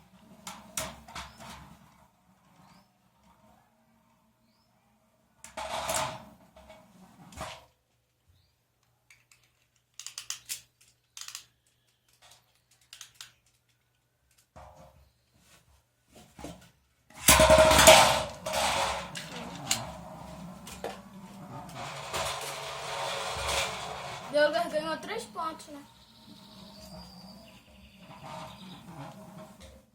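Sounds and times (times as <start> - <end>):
spinning tops scraping: 17.3 - 29.6.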